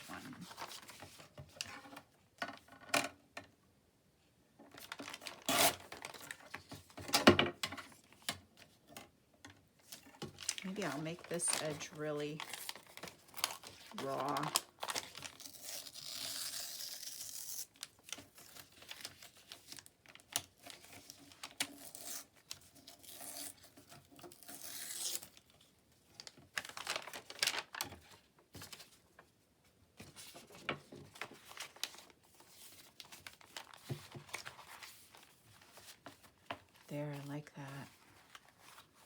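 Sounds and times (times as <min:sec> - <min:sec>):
paper crinkling: 0:00.0 - 0:01.8, 0:04.7 - 0:06.8, 0:09.8 - 0:29.4, 0:30.0 - 0:39.0
paper tearing: 0:05.0 - 0:06.2, 0:11.0 - 0:19.2.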